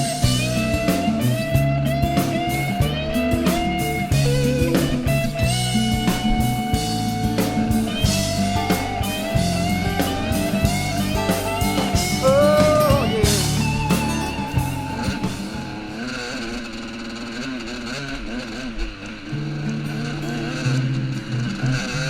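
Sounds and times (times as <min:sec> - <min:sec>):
steady drum beat: 0:00.0 - 0:15.8
bass: 0:00.0 - 0:16.5, 0:19.3 - 0:22.0
electric guitar: 0:00.0 - 0:22.0.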